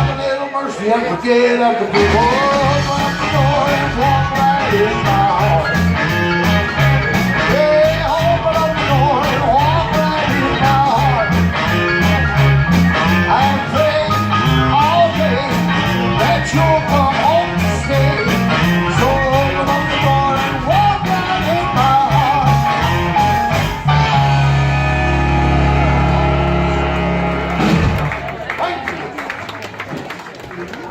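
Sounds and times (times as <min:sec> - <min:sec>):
bass line: 0:00.0 - 0:00.4, 0:01.8 - 0:28.5
electric guitar: 0:01.9 - 0:28.3
drums beat: 0:02.0 - 0:24.0, 0:27.5 - 0:28.2.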